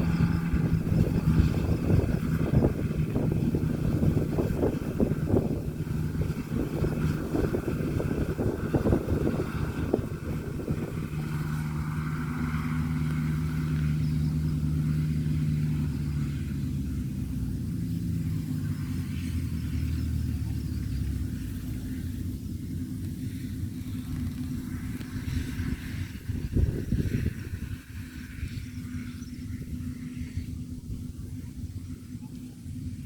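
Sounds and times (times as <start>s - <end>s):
combine harvester engine running: 0.0s - 33.0s.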